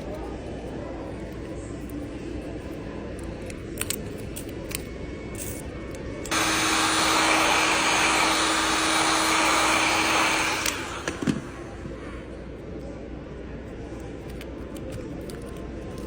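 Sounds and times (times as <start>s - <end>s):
electric air blower rushing: 6.3s - 11.8s.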